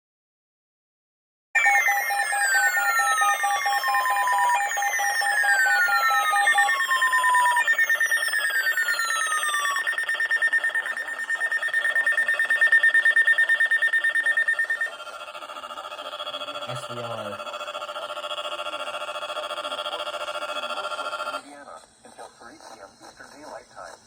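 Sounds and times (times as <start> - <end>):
falling siren sweeps: 1.6 - 15.4
pulsing beep: 1.6 - 21.4
rapidly pulsing high tone: 1.6 - 21.5.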